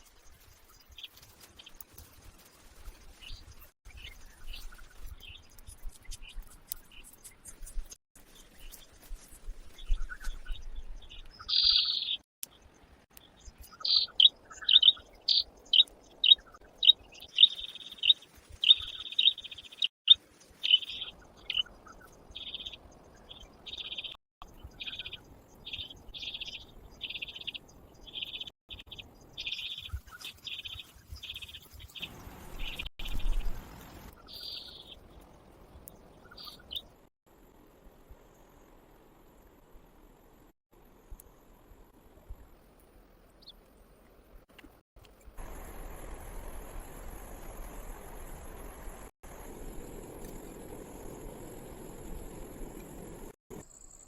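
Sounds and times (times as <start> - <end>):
bird chirping: 3.0 - 37.0.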